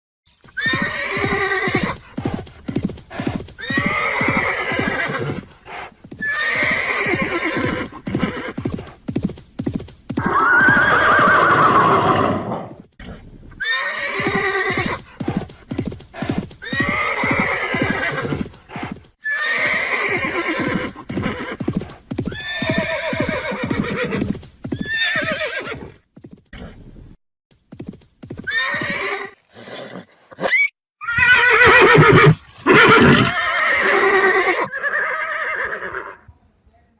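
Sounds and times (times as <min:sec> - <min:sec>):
galloping hoofbeats: 0:00.3 - 0:11.8, 0:14.0 - 0:26.8, 0:27.5 - 0:29.1
horse whinnying: 0:00.5 - 0:08.8, 0:10.2 - 0:26.0, 0:28.4 - 0:36.2.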